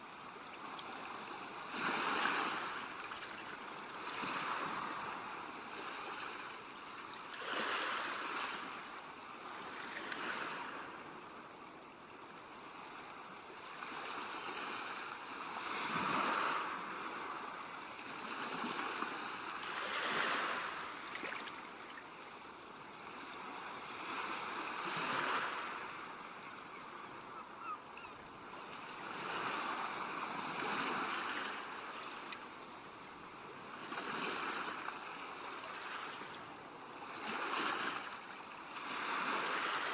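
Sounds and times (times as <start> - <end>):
ocean waves breaking: 14.0 - 21.9, 23.1 - 27.8.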